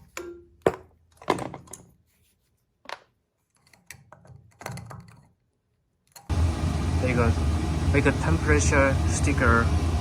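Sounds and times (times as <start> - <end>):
scraping and rubbing of small parts: 1.1 - 6.3.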